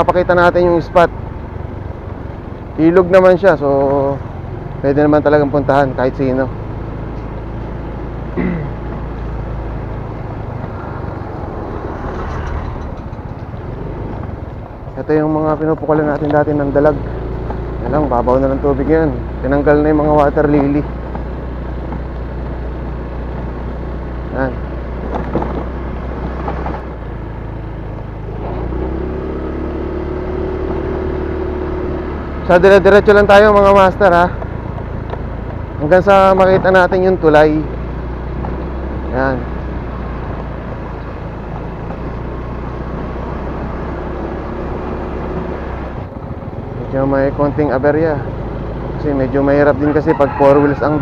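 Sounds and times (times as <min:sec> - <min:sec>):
motorcycle engine running: 0:00.0 - 0:51.0
road noise: 0:00.0 - 0:51.0
knocks and rattles: 0:25.1 - 0:26.9.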